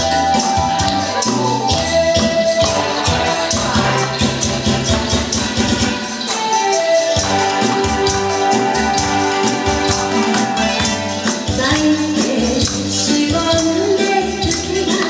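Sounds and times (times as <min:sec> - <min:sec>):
held melody notes: 0:00.0 - 0:11.9
jingling percussion beat: 0:00.0 - 0:15.0.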